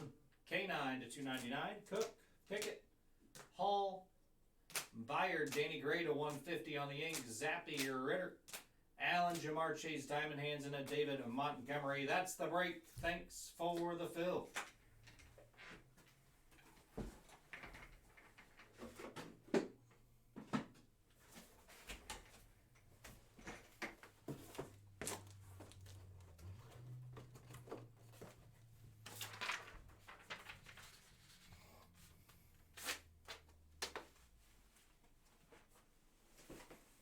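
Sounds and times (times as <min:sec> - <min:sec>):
cards and packaging handled: 0:21.2 - 0:32.0, 0:32.7 - 0:34.2.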